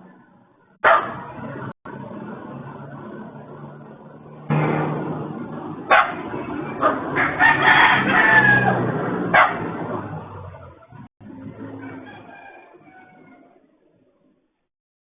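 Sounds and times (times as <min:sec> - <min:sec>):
sharp knocks: 0:04.5 - 0:07.4
rooster crowing: 0:06.7 - 0:09.7, 0:11.6 - 0:13.7.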